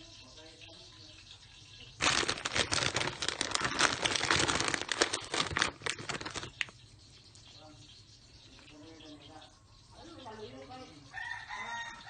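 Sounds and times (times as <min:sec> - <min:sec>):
plastic snack bag crinkling: 0:02.0 - 0:06.7.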